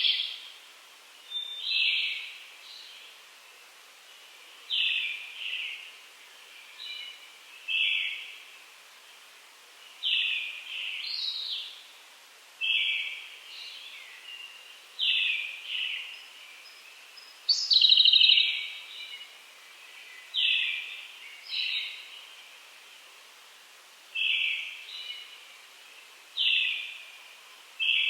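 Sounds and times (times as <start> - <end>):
birds singing whistled phrases: 0.0 - 0.4, 14.0 - 19.2.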